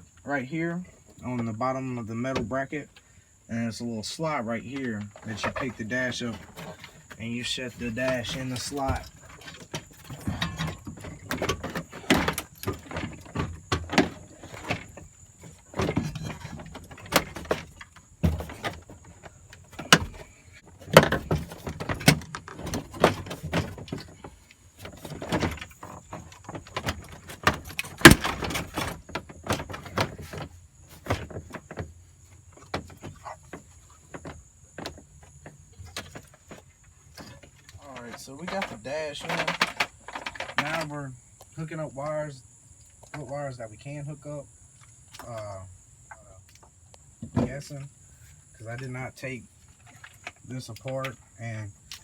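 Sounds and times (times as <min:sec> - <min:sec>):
dashboard knocks and scrapes: 0:04.8 - 0:41.0.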